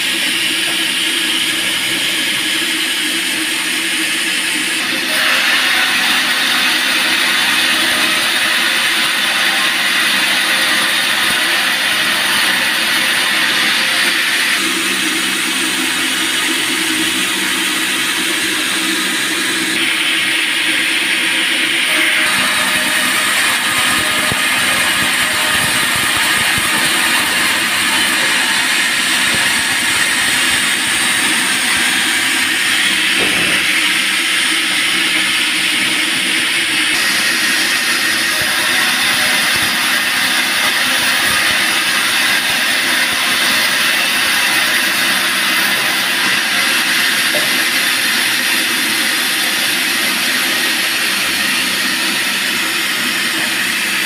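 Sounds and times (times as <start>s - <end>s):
machine hum: 10.9s - 44.6s.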